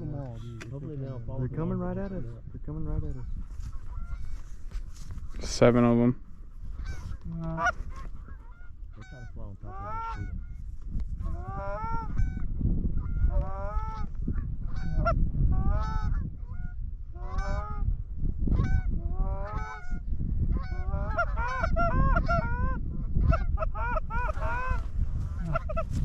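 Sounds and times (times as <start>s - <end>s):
goose honking: 6.8s - 10.6s, 11.3s - 12.4s, 14.7s - 16.2s, 17.2s - 17.9s, 18.5s - 20.0s, 20.6s - 26.0s.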